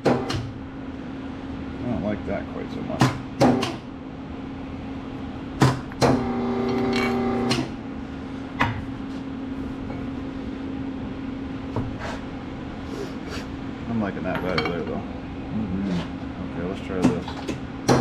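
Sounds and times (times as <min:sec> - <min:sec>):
hydraulic press humming: 0:05.6 - 0:07.8
loud steady machine tone: 0:06.0 - 0:07.8.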